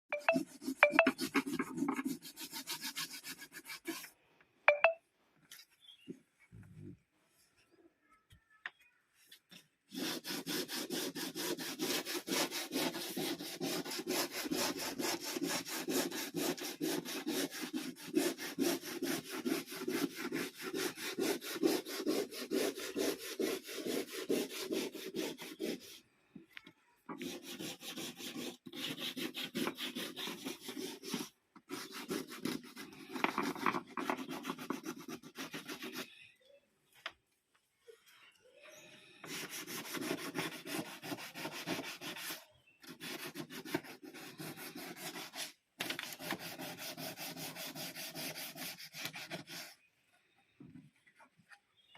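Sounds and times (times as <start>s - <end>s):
hand tool scraping on wood: 9.9s - 26.0s, 27.2s - 36.1s, 39.2s - 45.5s.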